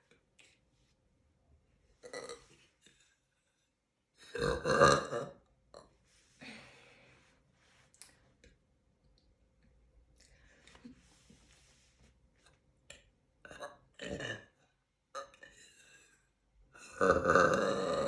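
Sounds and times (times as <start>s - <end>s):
woman burping: 4.3s - 5.4s, 13.5s - 14.6s, 16.9s - 18.0s.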